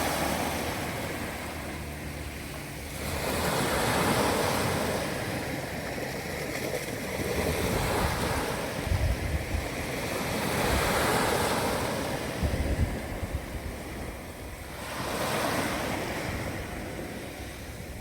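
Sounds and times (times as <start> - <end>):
ocean surf breaking: 0.0 - 17.9
wind buffeting microphone: 3.6 - 18.0.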